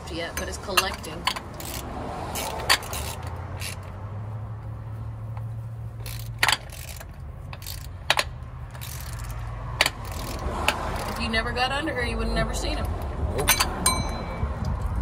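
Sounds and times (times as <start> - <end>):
metallic tool clicks and knocks: 13.4 - 14.9.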